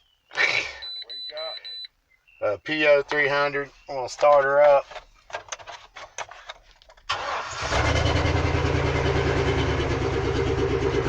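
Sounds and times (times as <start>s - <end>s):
truck engine cranking and idling: 7.0s - 11.0s.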